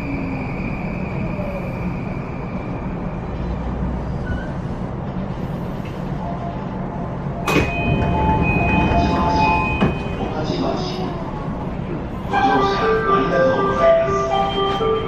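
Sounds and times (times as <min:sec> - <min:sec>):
train low rumble: 0:00.0 - 0:15.0
sharp clunk: 0:07.5 - 0:07.8.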